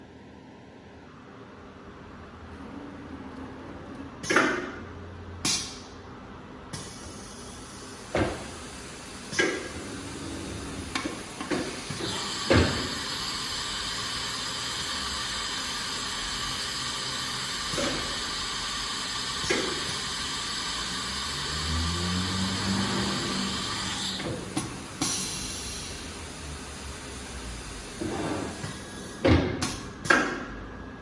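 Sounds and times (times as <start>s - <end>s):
air hissing: 6.7s - 29.9s
motor tone rising in pitch: 20.8s - 24.2s.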